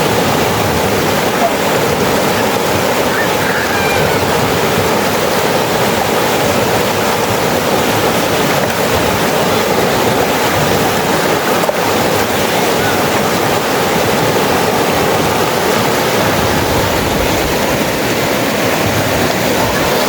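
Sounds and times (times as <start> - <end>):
river water rushing: 0.0 - 20.0.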